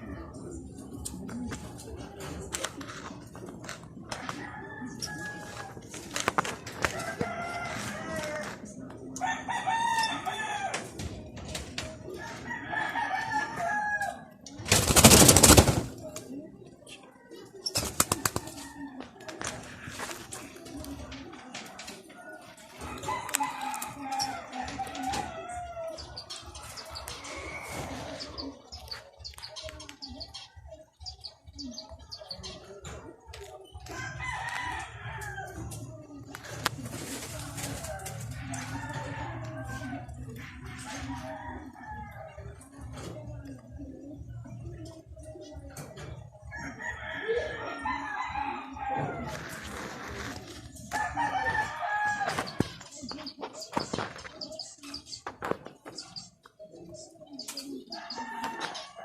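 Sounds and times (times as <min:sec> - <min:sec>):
rooster crowing: 0:06.8 - 0:08.6, 0:12.2 - 0:14.2, 0:46.6 - 0:49.3, 0:50.9 - 0:52.4.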